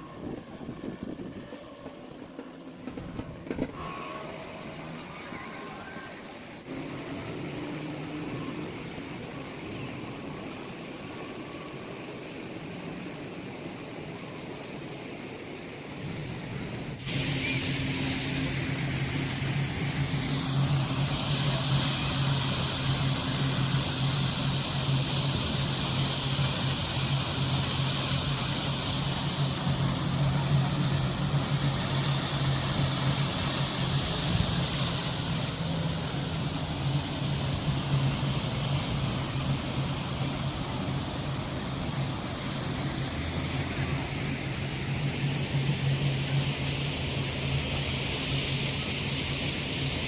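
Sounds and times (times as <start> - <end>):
waterfall rushing: 17.0 - 45.7.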